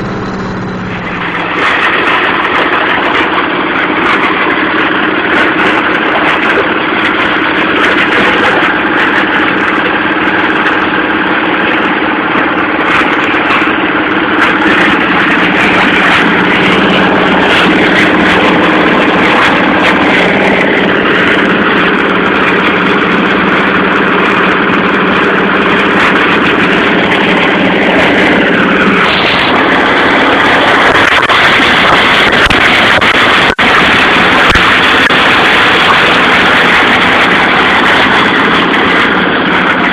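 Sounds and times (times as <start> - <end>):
plastic crusher machine running: 0.0 - 39.9.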